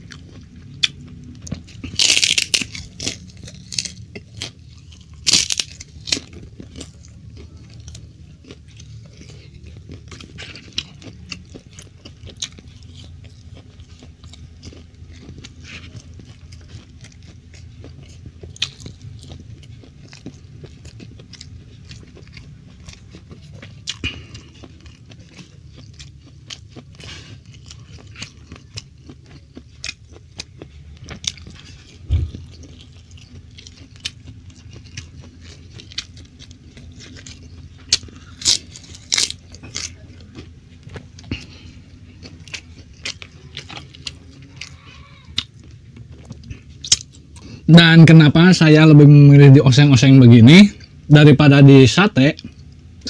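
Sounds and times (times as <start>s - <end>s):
chewing food close up: 0.0s - 53.0s
steady low hum: 0.0s - 53.0s
low thump: 32.1s - 32.4s.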